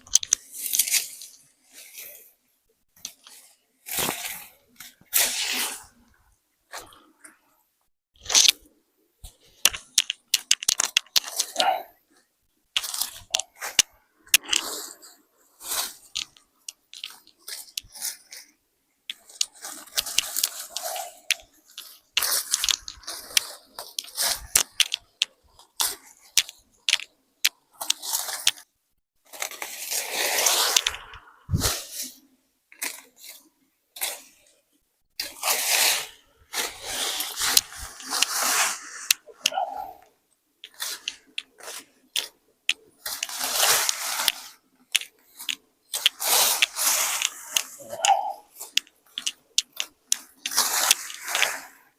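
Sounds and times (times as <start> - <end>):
crunching and rustling: 0.0 - 2.3, 3.0 - 7.4, 8.2 - 34.6, 35.2 - 51.9
sharp clicks: 40.6 - 51.6.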